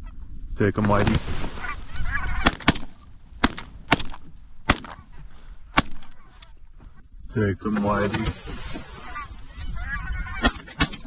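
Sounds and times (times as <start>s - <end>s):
geese honking: 0.8s - 3.2s, 4.8s - 7.0s, 7.6s - 10.8s
shotgun shots: 2.4s - 5.0s, 5.7s - 6.1s.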